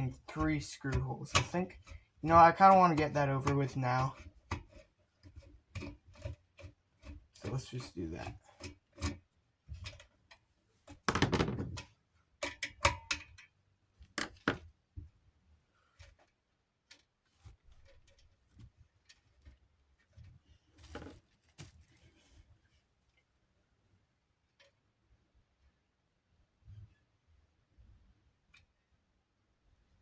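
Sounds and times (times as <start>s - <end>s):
ceiling fan parts clattering: 0.0s - 13.6s.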